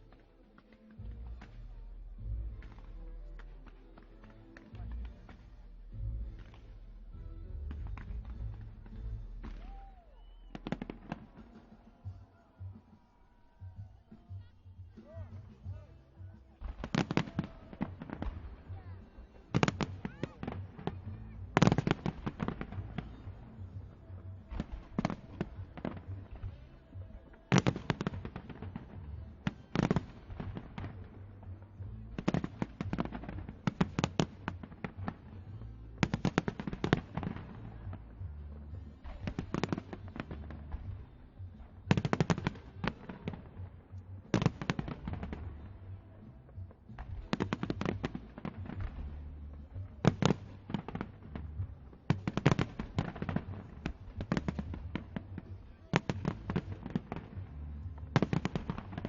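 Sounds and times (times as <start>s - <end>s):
fireworks crackling bangs: 16.5s - 38.0s, 39.0s - 46.0s, 46.6s - 59.0s.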